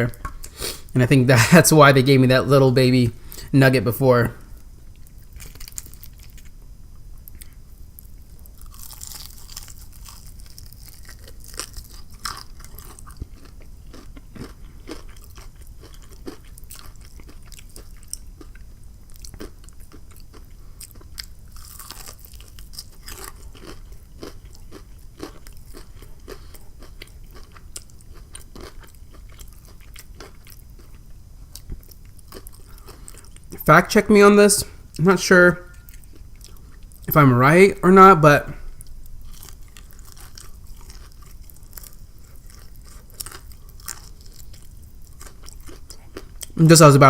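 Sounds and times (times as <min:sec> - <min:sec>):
crunching fried chicken: 0:05.0 - 0:06.6, 0:07.2 - 0:34.2, 0:35.0 - 0:47.0
wet chewing: 0:38.8 - 0:46.6.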